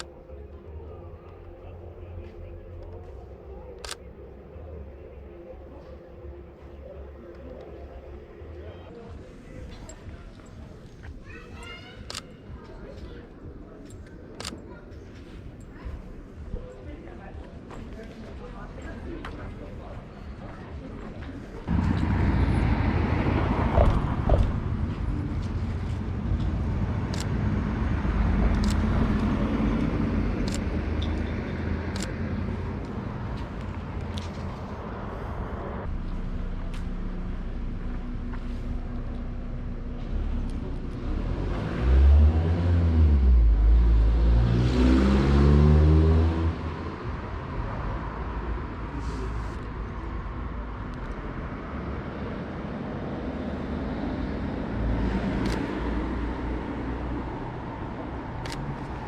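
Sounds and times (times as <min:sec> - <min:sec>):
cars passing by: 0:00.0 - 0:59.0
car engine accelerating: 0:21.6 - 0:48.4.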